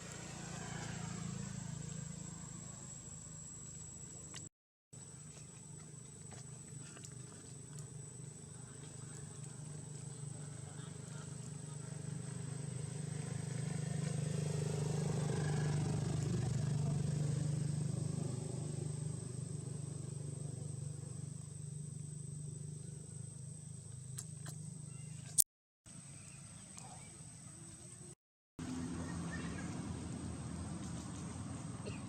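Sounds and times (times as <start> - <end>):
vehicle engine drone passing: 0.0 - 4.4, 8.9 - 21.6, 28.6 - 32.0.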